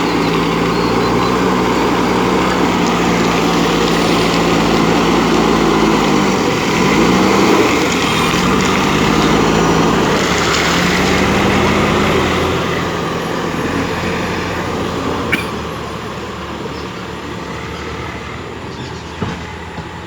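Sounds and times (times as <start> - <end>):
diesel engine running under load: 0.0 - 20.0.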